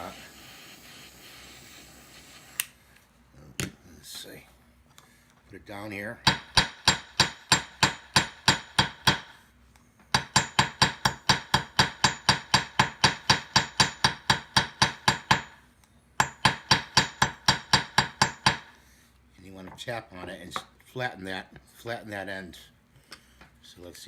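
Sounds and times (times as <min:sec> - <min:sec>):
hammer striking wire on anvil: 0:06.2 - 0:09.4, 0:10.1 - 0:15.6, 0:16.2 - 0:18.7.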